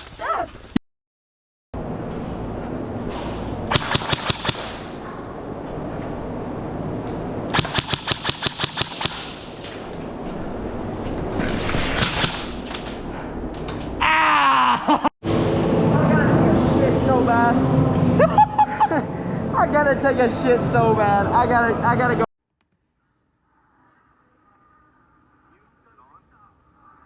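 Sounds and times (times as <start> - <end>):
airsoft gun firing bursts: 3.7 - 4.9, 7.5 - 9.4.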